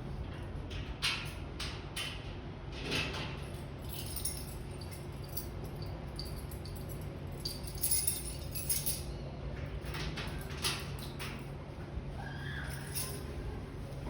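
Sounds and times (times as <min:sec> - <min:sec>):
steady low hum: 0:00.0 - 0:14.0
metal objects rattling and clinking: 0:03.8 - 0:09.2, 0:12.8 - 0:13.3.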